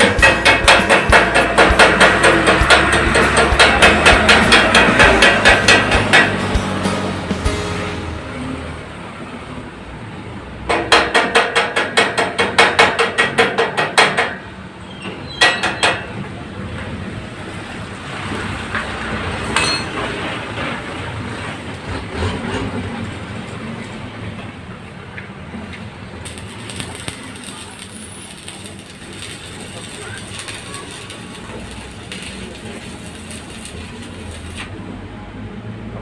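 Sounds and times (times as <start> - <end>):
hammer blows on metal: 0.0 - 8.7.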